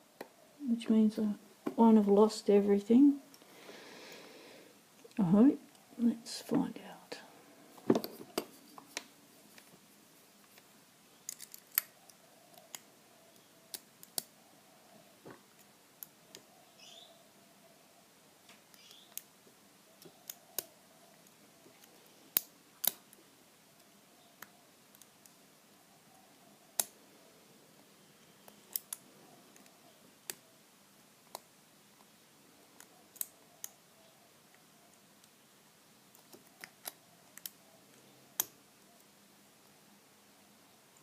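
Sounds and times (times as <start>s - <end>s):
lock pick metallic clicks: 11.3s - 12.8s, 28.5s - 29.0s.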